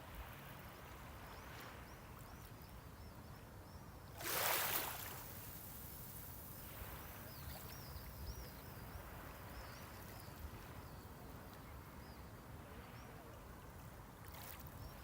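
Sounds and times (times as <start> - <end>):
small waves washing onto shore: 4.2 - 10.8.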